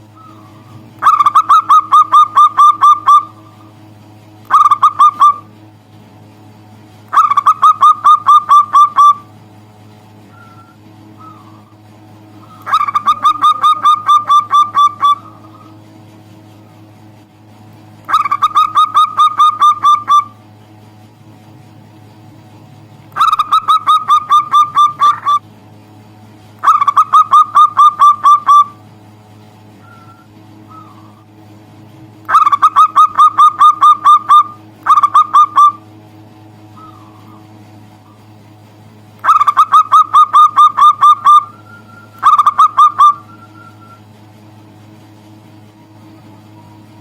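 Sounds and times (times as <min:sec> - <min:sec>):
dove calling rapid short notes: 0:00.0 - 0:05.6, 0:07.1 - 0:09.6, 0:10.2 - 0:16.9, 0:17.9 - 0:20.6, 0:23.1 - 0:25.5, 0:26.6 - 0:31.6, 0:32.2 - 0:38.4, 0:39.2 - 0:44.3
steady low hum: 0:00.0 - 0:47.0.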